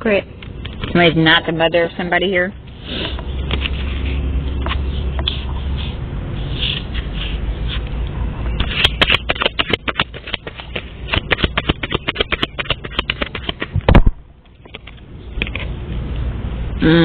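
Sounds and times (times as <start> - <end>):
cards being shuffled: 8.6 - 15.7.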